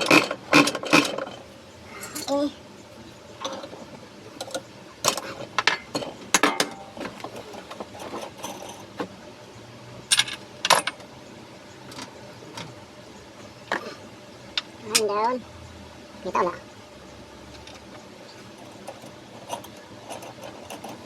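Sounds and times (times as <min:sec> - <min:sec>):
metal tools clinking: 0:02.0 - 0:02.5, 0:04.4 - 0:08.9, 0:10.1 - 0:11.0, 0:18.5 - 0:21.0.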